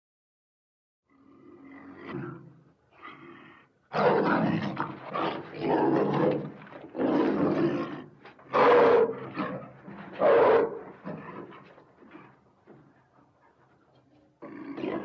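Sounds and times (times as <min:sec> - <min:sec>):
big cat roars: 0:01.1 - 0:12.4, 0:14.4 - 0:15.0.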